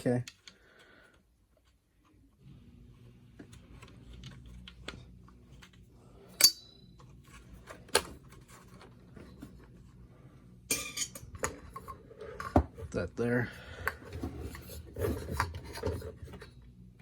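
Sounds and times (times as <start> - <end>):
faint low hum: 0.0 - 17.0
vacuum parts clicking and clinking: 5.6 - 9.6.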